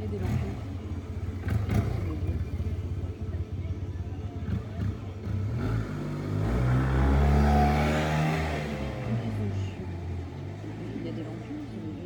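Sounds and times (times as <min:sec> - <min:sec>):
motor engine revving: 0:00.0 - 0:02.9, 0:04.4 - 0:09.5.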